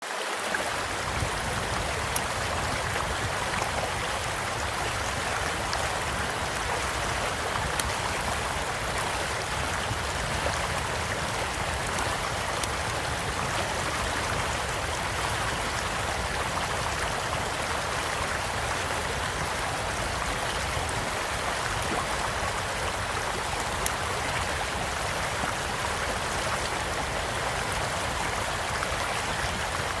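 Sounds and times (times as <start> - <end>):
stream flowing: 0.0 - 30.0
campfire crackling and popping: 7.6 - 13.3.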